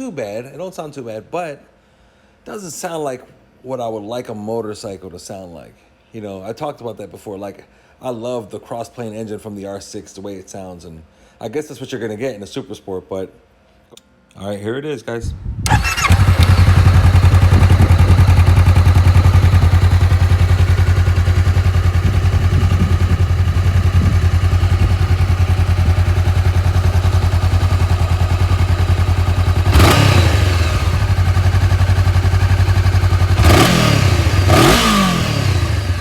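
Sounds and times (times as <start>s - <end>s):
motorcycle engine idling and revving: 15.7s - 36.0s.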